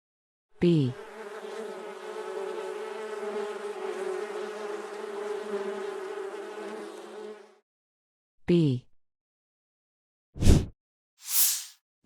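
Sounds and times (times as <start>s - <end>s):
bee buzzing: 0.7s - 7.6s.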